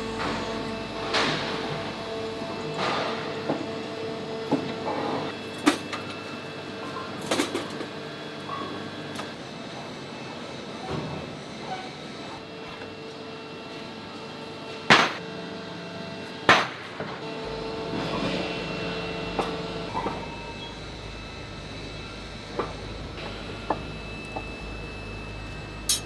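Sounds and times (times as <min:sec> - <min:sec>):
machinery hum: 0:00.0 - 0:07.1, 0:17.2 - 0:26.0.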